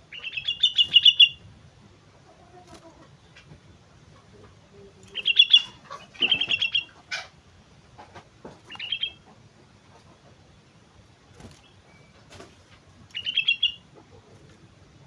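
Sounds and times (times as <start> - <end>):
bird chirping: 0.0 - 1.5, 4.7 - 7.2, 8.6 - 9.4, 11.5 - 12.3, 13.1 - 14.4.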